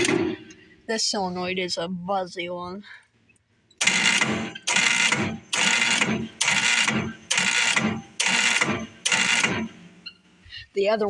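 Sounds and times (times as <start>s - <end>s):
electric solenoid buzzing: 0.0s - 0.7s, 3.8s - 10.4s.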